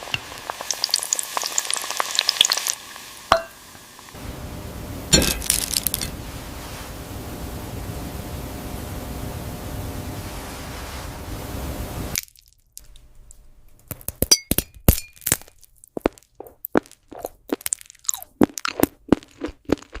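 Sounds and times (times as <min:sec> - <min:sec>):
steady hiss: 0:00.0 - 0:12.2
crisp crunching bites: 0:05.4 - 0:06.1, 0:15.2 - 0:20.0.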